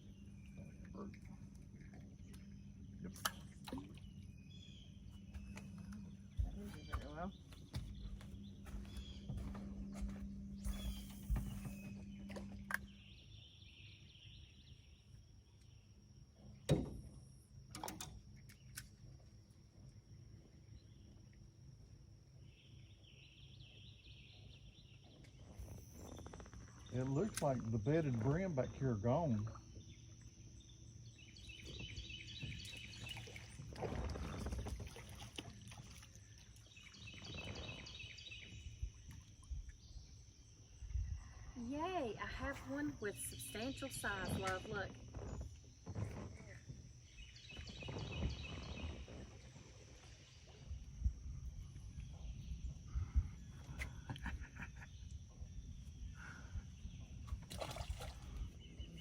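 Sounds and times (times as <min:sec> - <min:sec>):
water sloshing against a boat: 0:00.0 - 0:59.0
thin high whine: 0:09.9 - 0:12.9.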